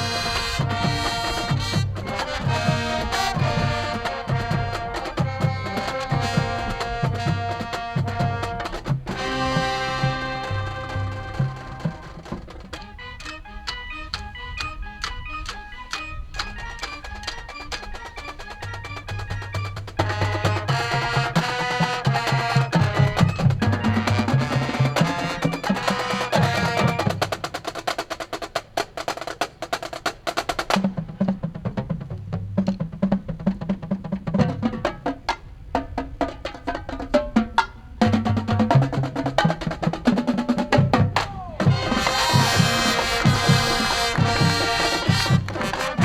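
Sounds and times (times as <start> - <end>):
marching band drums: 0.0 - 13.8, 14.6 - 46.0
band playing loud chords: 0.0 - 27.9, 38.0 - 46.0.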